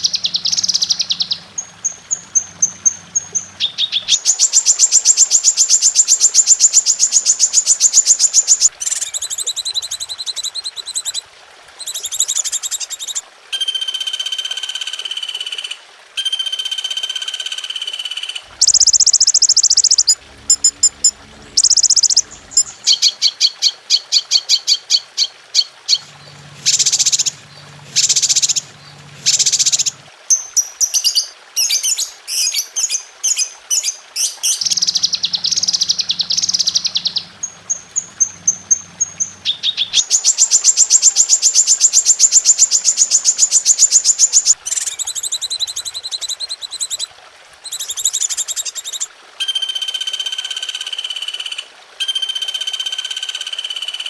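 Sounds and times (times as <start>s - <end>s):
songbirds chirping and trilling: 0.0s - 10.4s, 18.3s - 45.0s.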